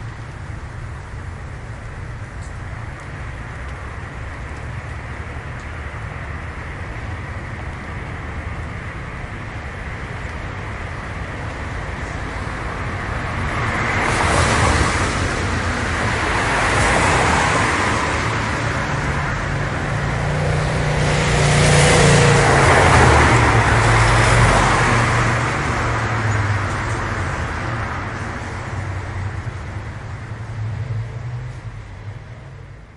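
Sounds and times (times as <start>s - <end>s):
steady traffic: 0.0s - 32.9s
tyres hissing on wet road: 7.0s - 31.8s.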